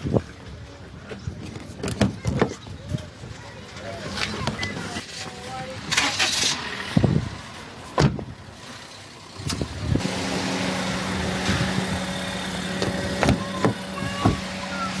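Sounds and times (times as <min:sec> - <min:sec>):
car engine idling: 0:05.6 - 0:15.0.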